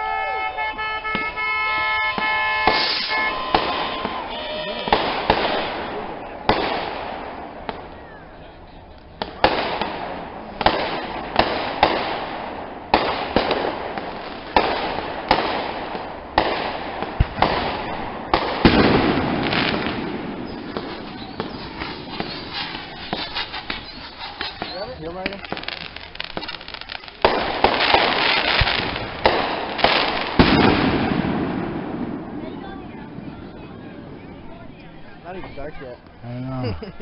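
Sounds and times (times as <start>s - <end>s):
fireworks bangs echoing: 0.0s - 35.6s
small firework pops: 2.1s - 8.1s, 8.9s - 31.6s.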